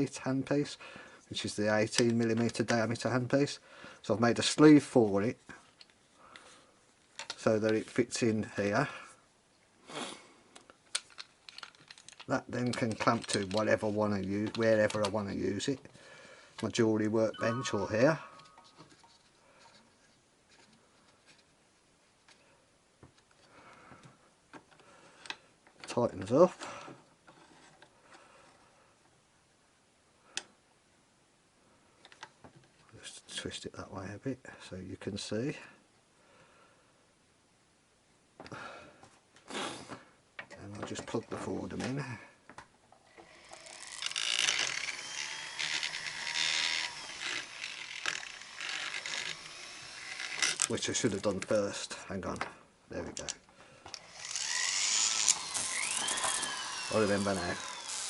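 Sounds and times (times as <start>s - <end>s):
light handling noise: 10.6s - 15.8s.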